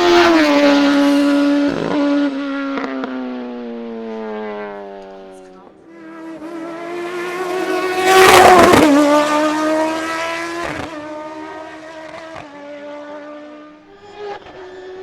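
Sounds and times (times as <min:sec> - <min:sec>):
race car passing at full throttle: 0:00.0 - 0:15.0.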